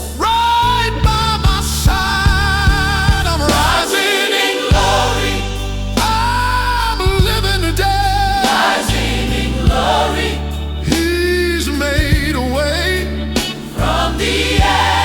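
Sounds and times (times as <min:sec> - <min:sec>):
steady bass notes: 0:00.0 - 0:03.9, 0:04.7 - 0:15.0
choir-like backing: 0:00.0 - 0:15.0
voices singing gospel song: 0:00.0 - 0:15.0.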